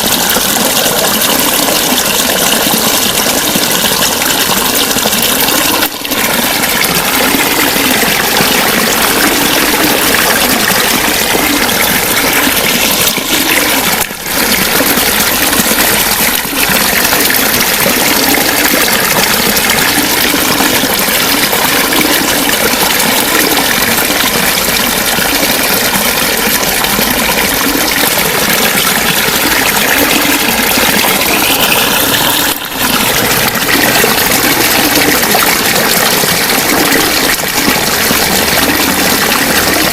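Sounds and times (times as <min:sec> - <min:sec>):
water flowing and gurgling: 0:00.0 - 0:39.9.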